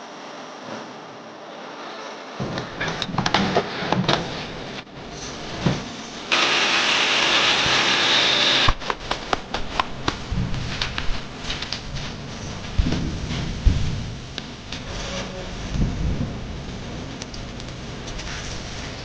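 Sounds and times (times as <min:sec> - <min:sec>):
knocks and clatter of parts: 0:02.4 - 0:04.5
loud steady hiss: 0:03.7 - 0:19.0.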